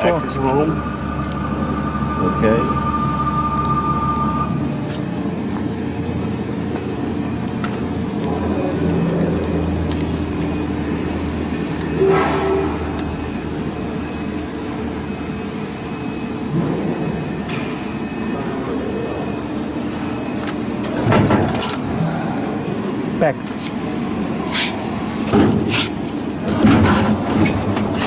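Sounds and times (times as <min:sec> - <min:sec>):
high steady tone: 0:00.0 - 0:21.0
machine motors humming and whining: 0:00.0 - 0:28.0.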